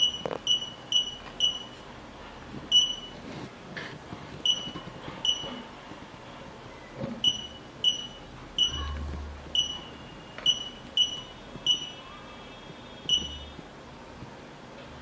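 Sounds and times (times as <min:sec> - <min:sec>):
high key-press beeps: 0:00.0 - 0:01.9, 0:02.7 - 0:03.2, 0:04.4 - 0:05.7, 0:07.2 - 0:12.0, 0:13.0 - 0:13.6.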